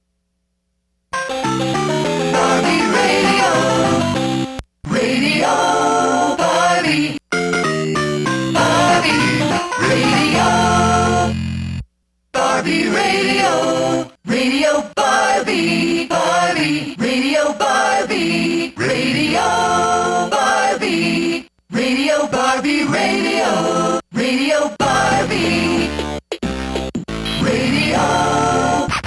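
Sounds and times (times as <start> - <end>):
toy boombox playing pop song: 1.2 - 11.4, 24.8 - 29.0.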